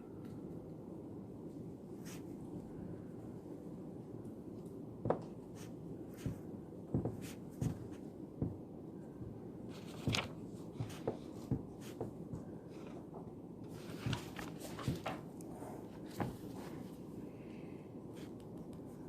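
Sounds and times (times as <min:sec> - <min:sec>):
low room hum: 0:00.0 - 0:19.0
desk taps: 0:06.9 - 0:07.8.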